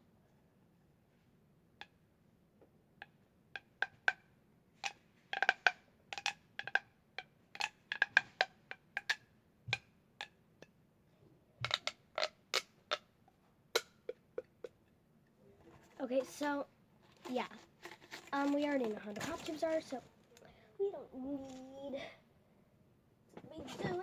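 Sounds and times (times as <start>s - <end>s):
plastic pop tubes popping: 3.0s - 10.8s, 11.6s - 13.1s, 13.8s - 14.8s.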